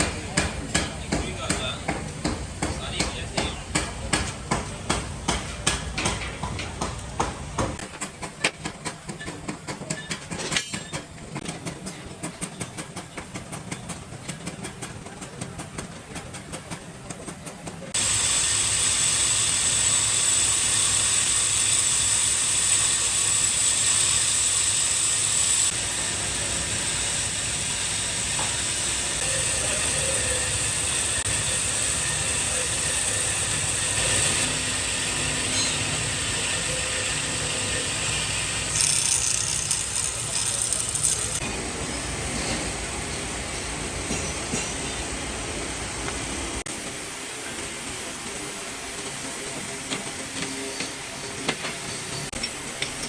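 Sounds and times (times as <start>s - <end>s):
hammer strikes on metal: 0.0s - 11.1s
loud hiss with high whine: 18.0s - 44.0s.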